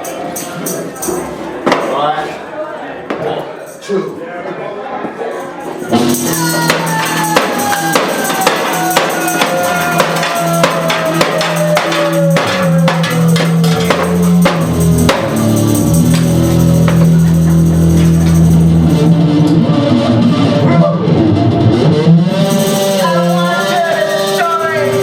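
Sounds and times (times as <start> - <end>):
tambourine beat: 0.0 - 1.4, 5.6 - 19.2, 22.3 - 25.0
live band music: 5.9 - 25.0
steady bass notes: 9.7 - 23.4.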